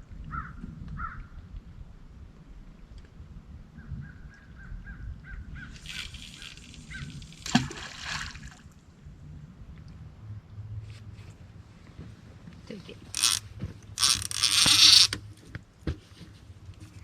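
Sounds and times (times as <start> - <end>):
water splashing from thrashing fish: 5.8 - 8.6.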